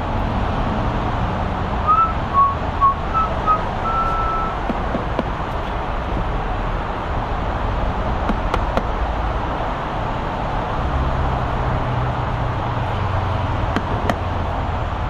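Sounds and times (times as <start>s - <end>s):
low engine hum: 0.0s - 15.0s
traffic rumble: 0.0s - 15.0s.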